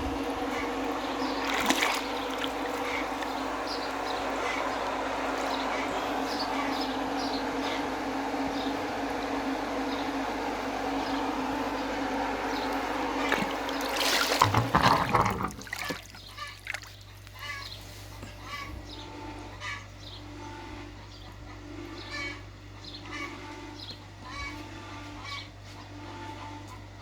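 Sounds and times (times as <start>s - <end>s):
low hum: 0.0s - 16.1s
water running: 0.7s - 5.6s, 12.6s - 17.0s
water splashing and sloshing: 1.3s - 3.5s, 12.7s - 17.4s.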